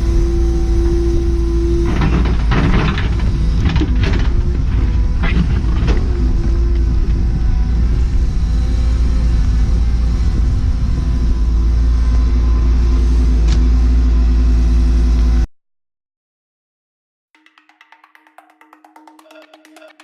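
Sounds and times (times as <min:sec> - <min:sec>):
diesel engine rumbling: 0:00.0 - 0:15.2.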